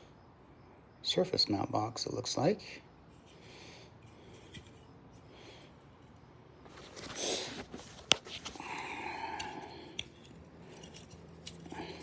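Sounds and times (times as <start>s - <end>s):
plastic packaging rustling: 6.7s - 8.9s.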